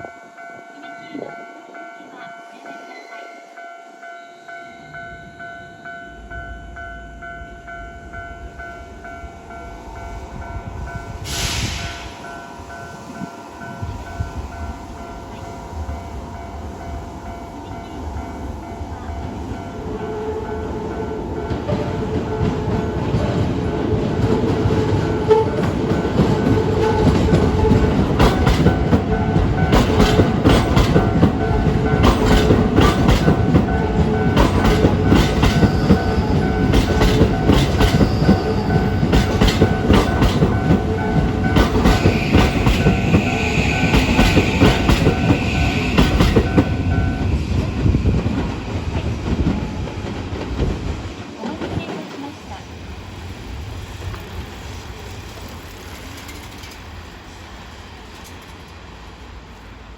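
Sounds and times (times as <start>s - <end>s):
crossing warning bell ringing: 0.0s - 48.6s
electric train passing: 0.0s - 59.9s
train wheels clicking over rail joints: 21.4s - 52.6s, 53.6s - 59.4s.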